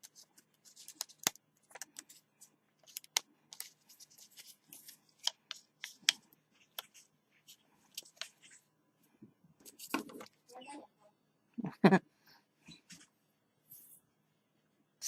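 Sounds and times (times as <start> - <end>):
tape clicking and crackling: 0.0 - 7.1.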